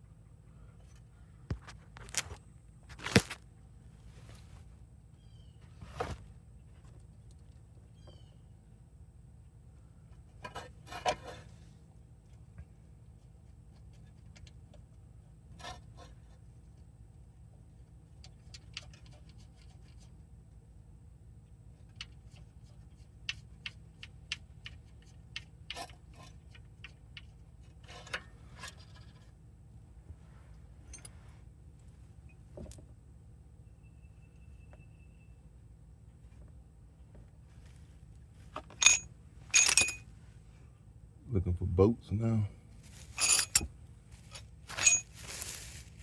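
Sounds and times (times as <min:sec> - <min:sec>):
steady low hum: 0:00.0 - 0:46.0
metal hand tools clinking: 0:38.6 - 0:40.1, 0:42.9 - 0:46.0.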